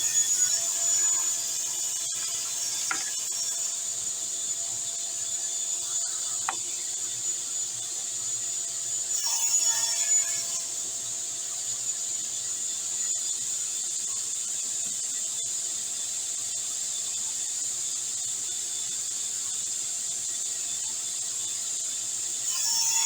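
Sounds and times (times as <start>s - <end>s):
table saw motor whining: 0.0s - 11.1s.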